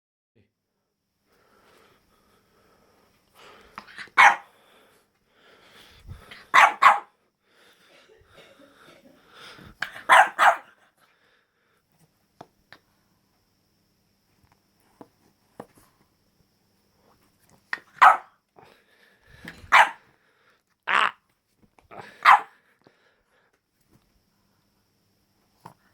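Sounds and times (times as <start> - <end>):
puppy barking: 4.0 - 4.5, 6.5 - 7.1, 9.8 - 10.8, 18.0 - 18.4, 19.7 - 20.0, 22.0 - 22.6.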